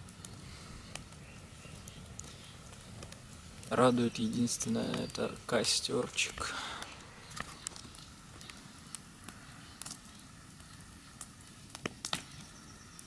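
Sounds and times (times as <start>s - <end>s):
campfire crackling: 0.0s - 13.0s.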